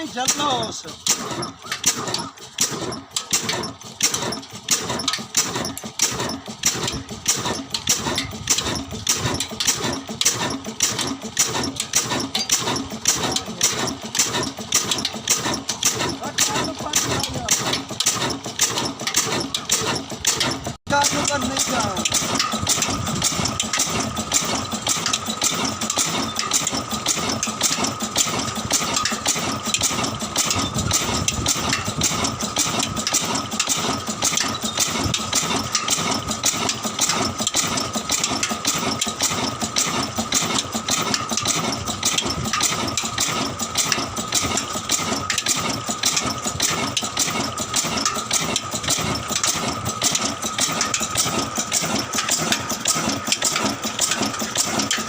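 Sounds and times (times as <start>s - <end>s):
old engine running: 0.0s - 55.0s.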